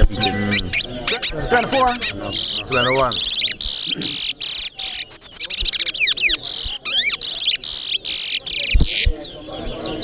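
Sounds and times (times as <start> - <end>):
bird singing whistled chirps: 4.6 - 10.0.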